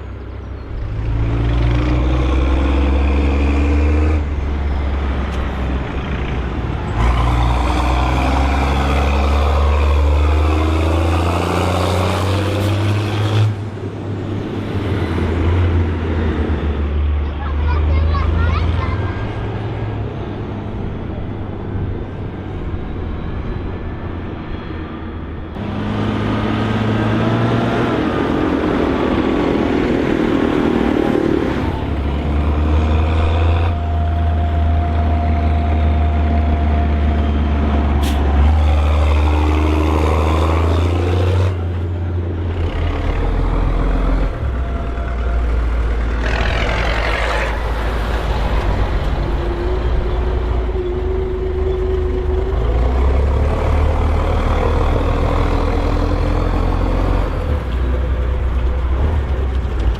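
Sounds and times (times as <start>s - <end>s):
tractor diesel engine running: 41.6s - 59.9s.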